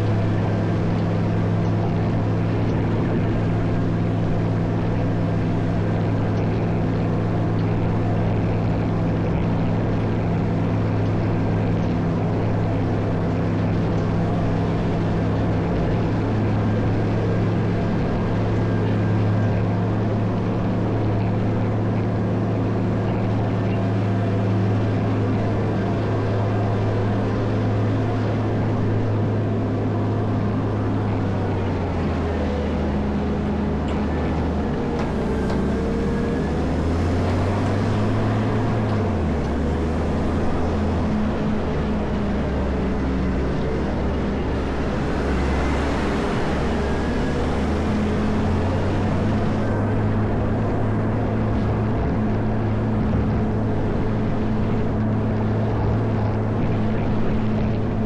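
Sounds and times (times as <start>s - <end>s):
diesel engine droning: 0.0s - 58.0s.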